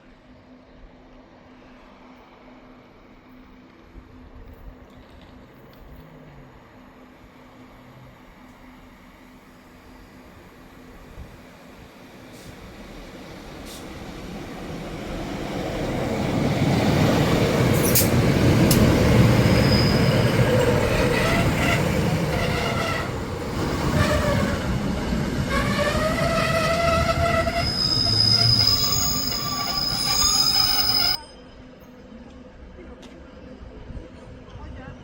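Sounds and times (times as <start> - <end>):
diesel train passing: 0.1 - 34.7
wheel squeal: 19.4 - 24.8, 25.5 - 31.5.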